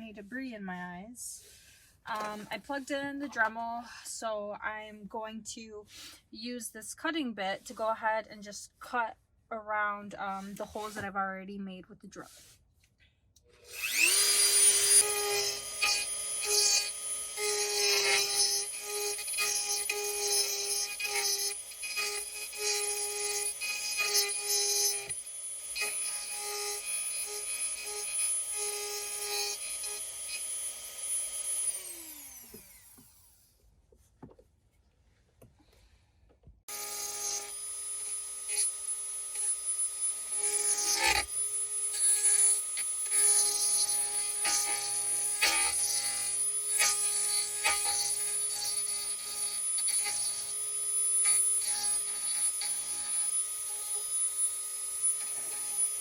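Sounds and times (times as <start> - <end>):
cutting bit grinding plastic: 13.5 - 33.4, 36.7 - 56.0
rotary tool whining: 13.6 - 33.5, 36.7 - 56.0.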